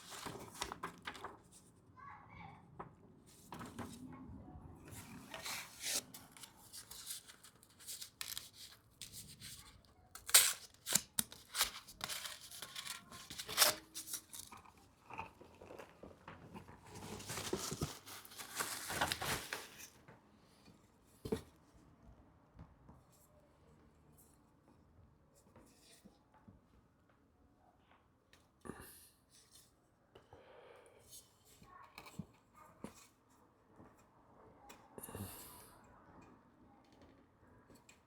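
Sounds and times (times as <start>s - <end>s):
paper packaging crinkling and rustling: 0.0s - 1.6s, 4.9s - 15.9s, 16.6s - 20.0s.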